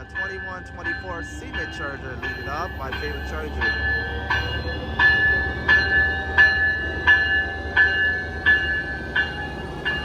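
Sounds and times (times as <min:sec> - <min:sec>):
locomotive bell ringing: 0:00.0 - 0:10.0
train low rumble: 0:00.0 - 0:10.0.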